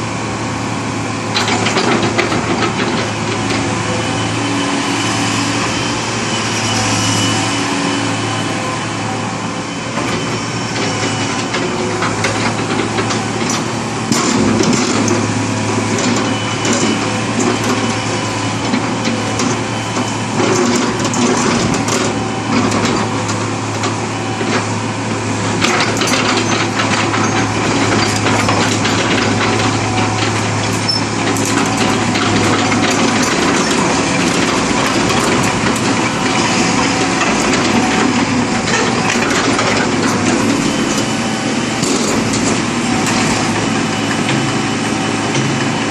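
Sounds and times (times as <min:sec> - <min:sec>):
excavator diesel engine running: 0:00.0 - 0:45.9
knocks and clatter: 0:10.0 - 0:24.7, 0:25.5 - 0:41.1.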